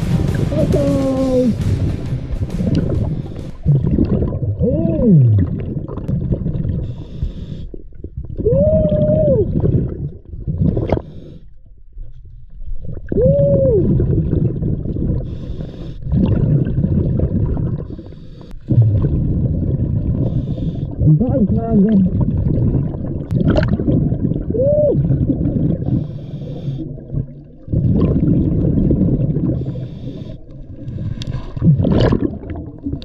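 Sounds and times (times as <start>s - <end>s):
exhaled bubbles rumbling: 3.6s - 7.2s, 7.8s - 11.0s, 12.8s - 15.4s, 16.0s - 33.0s
regulator inhale hiss: 25.9s - 26.9s, 29.6s - 30.4s.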